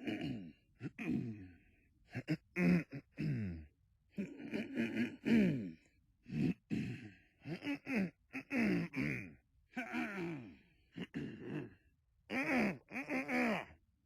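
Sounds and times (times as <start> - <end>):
men clearing their throats: 0.0 - 13.8.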